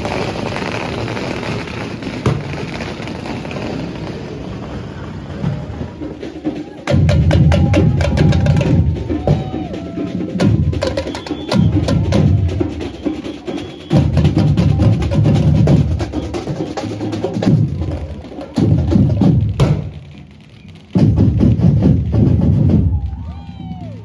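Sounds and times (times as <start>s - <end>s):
sharp crack: 0.0s - 5.8s, 19.2s - 21.3s
drum band playing: 5.4s - 20.2s, 20.9s - 24.0s
heavy bass drums: 5.7s - 13.0s, 13.8s - 16.4s, 17.3s - 20.0s, 21.0s - 23.9s.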